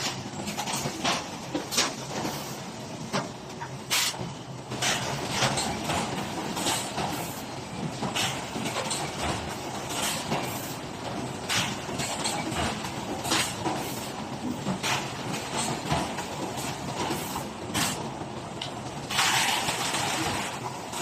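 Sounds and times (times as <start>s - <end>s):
packing machinery mechanical din: 0.0s - 21.0s.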